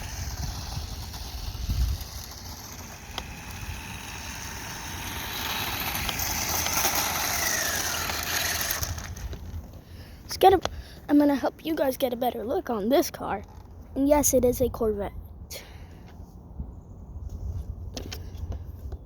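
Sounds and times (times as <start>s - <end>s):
falling whine: 0.0s - 9.6s
rc car tyres hissing: 0.0s - 9.6s.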